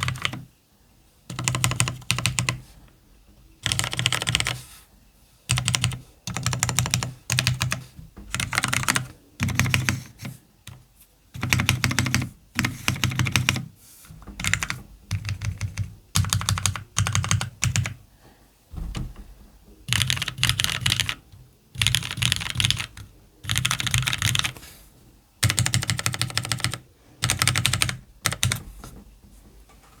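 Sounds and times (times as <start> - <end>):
typing on mechanical keyboard: 0.0 - 0.5, 1.3 - 2.6, 3.6 - 4.6, 5.5 - 10.8, 11.4 - 13.7, 14.4 - 18.0, 19.9 - 24.6, 25.4 - 28.6.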